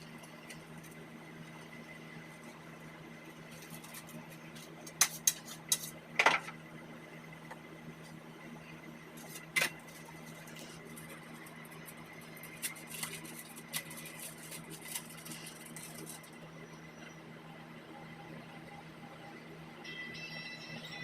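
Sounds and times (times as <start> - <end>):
steady low hum: 0.0 - 21.0
tool clicks and scrapes: 3.6 - 6.0.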